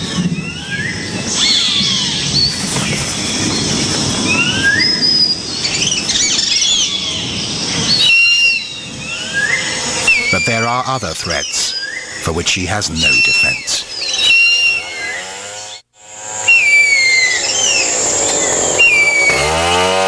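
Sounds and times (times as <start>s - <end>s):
eagle whistling cry: 4.3s - 12.2s, 13.0s - 15.2s, 16.4s - 19.4s.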